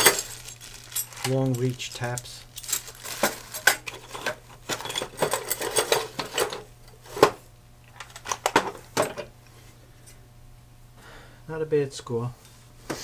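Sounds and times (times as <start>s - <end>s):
steel tools clinking and rattling: 0.0s - 6.7s
steady low hum: 0.0s - 13.0s.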